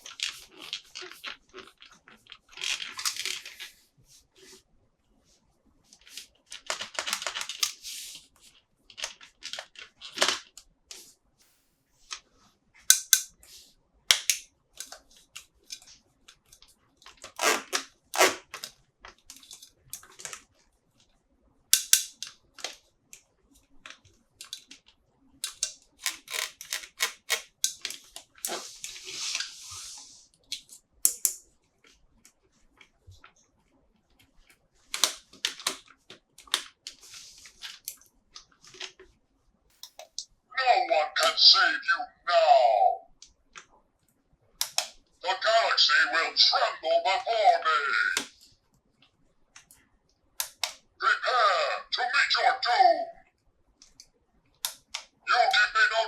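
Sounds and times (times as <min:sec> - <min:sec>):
plastic or cardboard rustling: 0:17.2 - 0:18.6, 0:26.0 - 0:27.4.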